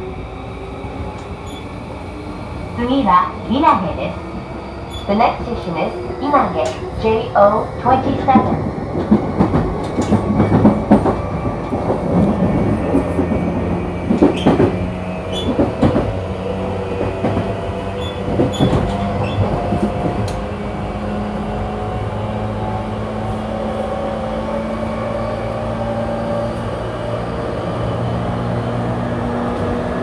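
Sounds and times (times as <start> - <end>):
train wheels rumbling on track: 0.0 - 30.0
clicks and knocks from train: 4.9 - 20.6.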